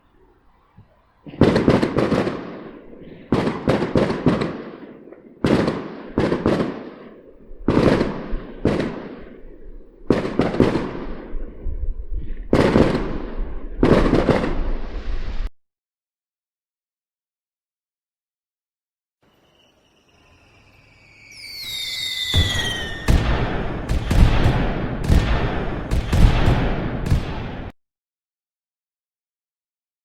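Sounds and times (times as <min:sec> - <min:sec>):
fireworks bangs: 0:00.9 - 0:15.2, 0:19.7 - 0:27.8
rumbling echo: 0:21.6 - 0:27.7.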